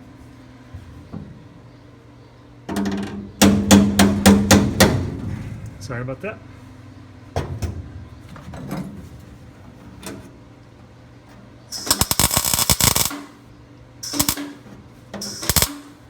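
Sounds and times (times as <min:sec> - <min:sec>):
steady low hum: 0:03.3 - 0:16.0
arc welder crackling: 0:11.7 - 0:16.0.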